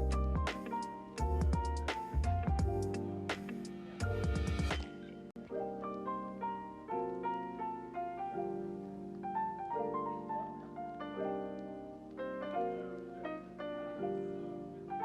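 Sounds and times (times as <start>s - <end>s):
soft piano melody: 0.0s - 15.0s.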